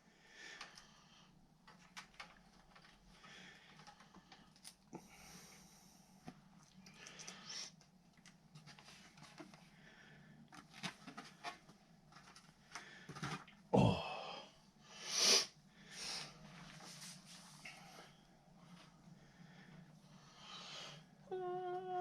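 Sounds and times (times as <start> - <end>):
breathy hiss: 13.9 - 18.2.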